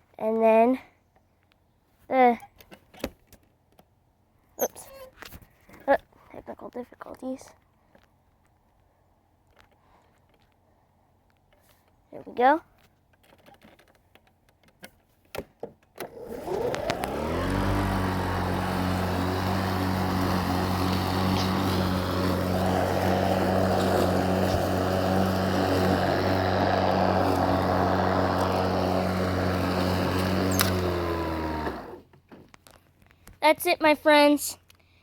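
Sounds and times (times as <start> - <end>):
electric lawn mower whining: 16.0 - 32.2.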